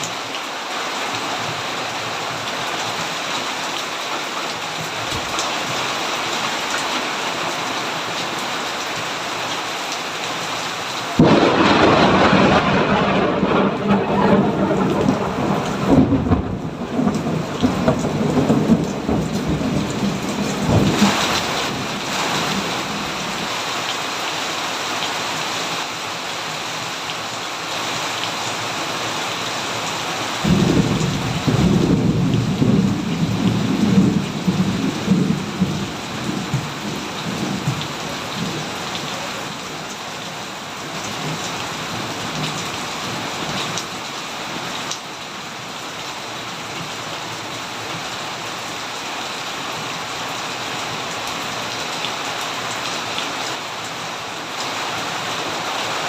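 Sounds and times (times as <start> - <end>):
steady rain falling: 0.0 - 56.0
thunder rolling: 11.2 - 21.9, 30.4 - 37.9.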